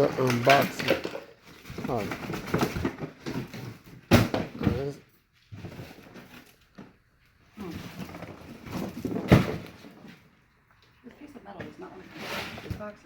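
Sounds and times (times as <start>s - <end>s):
cardboard boxes rummaged: 0.0s - 10.2s.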